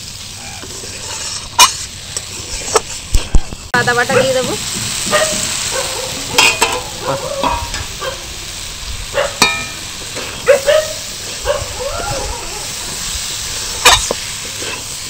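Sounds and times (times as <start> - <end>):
food sizzling in pan: 0.0 - 15.0
spatula scraping pan: 0.7 - 3.1, 12.8 - 15.0
metal clank: 4.0 - 8.0, 9.4 - 10.4, 13.8 - 14.8.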